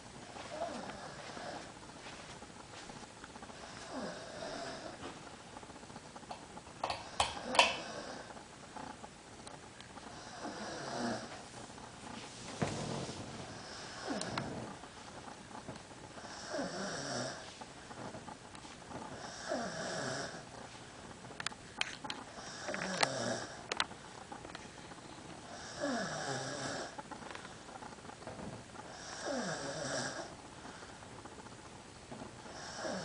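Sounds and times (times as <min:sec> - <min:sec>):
man snoring: 0:03.6 - 0:05.0, 0:07.0 - 0:08.3, 0:10.2 - 0:11.3, 0:13.5 - 0:14.7, 0:16.2 - 0:17.4, 0:19.2 - 0:20.4, 0:22.4 - 0:23.6, 0:25.5 - 0:27.0, 0:28.9 - 0:30.3, 0:32.5 - 0:33.0.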